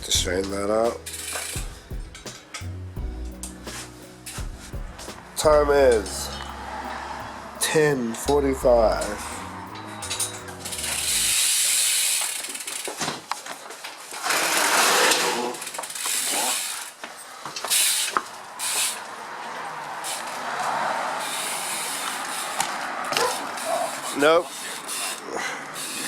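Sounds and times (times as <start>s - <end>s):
tools clicking and rattling: 0.4s - 2.7s.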